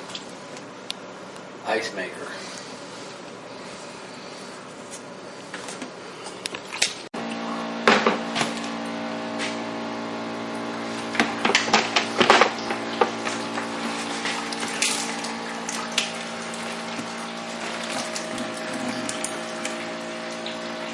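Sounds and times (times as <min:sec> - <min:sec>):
machine humming: 0:00.0 - 0:20.9
water: 0:06.4 - 0:07.5, 0:10.3 - 0:20.9.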